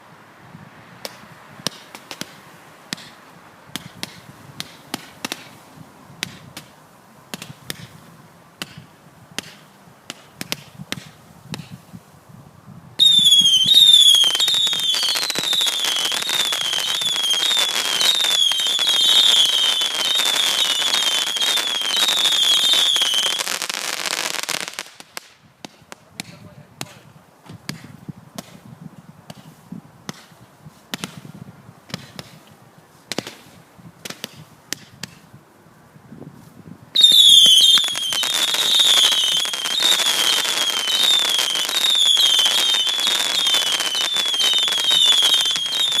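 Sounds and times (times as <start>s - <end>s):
faint firework pops and clicks: 1.0s - 5.6s, 6.2s - 8.0s, 8.6s - 11.9s, 24.4s - 35.4s
warbling firework whistle: 13.0s - 23.6s, 37.0s - 46.0s
rapid firework barrage: 13.1s - 26.9s, 37.0s - 46.0s.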